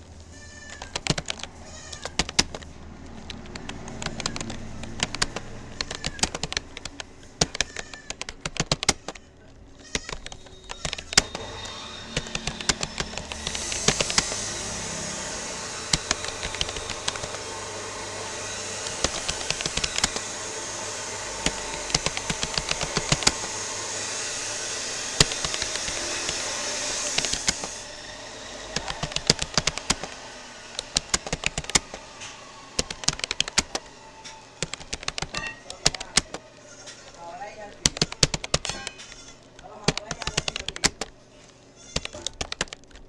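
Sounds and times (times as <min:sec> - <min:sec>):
keyboard typing clicks: 0:00.7 - 0:41.2, 0:41.9 - 0:43.0
steady rushing noise: 0:10.8 - 0:36.6.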